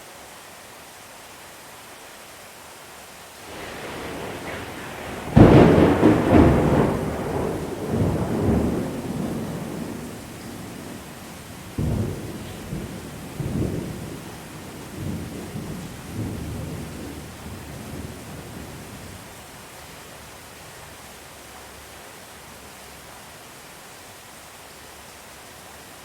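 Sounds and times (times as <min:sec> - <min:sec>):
steady rain: 0:00.0 - 0:26.0
thunder rumbling: 0:03.5 - 0:19.5.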